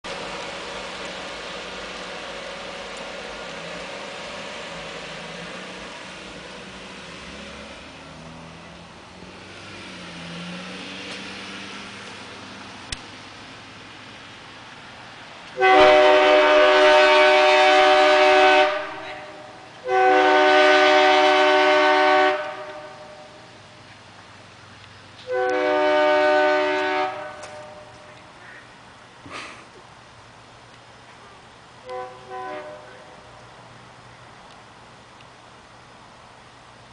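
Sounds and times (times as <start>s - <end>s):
air train horn blasts: 15.6s - 23.6s, 25.2s - 28.2s, 31.8s - 33.2s.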